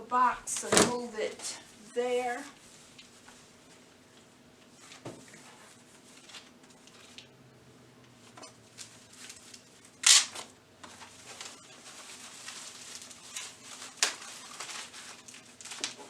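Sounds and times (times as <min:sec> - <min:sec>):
packaging rustling and scraping: 0:08.2 - 0:16.0.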